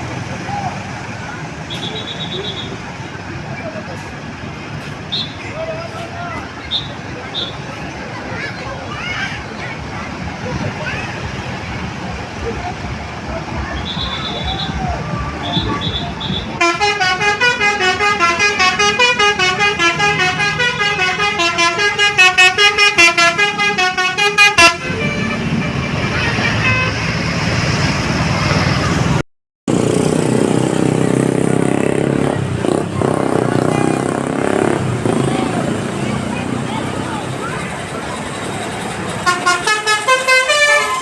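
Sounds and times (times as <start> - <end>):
bus engine rumble: 0.0 - 41.0
road traffic: 0.0 - 41.0
musical bus horn tune: 15.4 - 27.5, 39.2 - 41.0.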